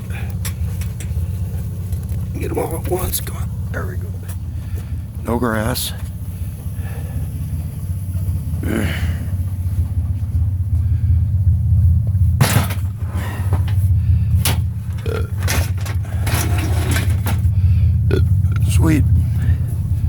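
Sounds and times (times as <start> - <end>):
vehicle engine idling: 0.0 - 20.0
man belching: 8.6 - 9.3, 15.0 - 15.7, 18.0 - 18.7.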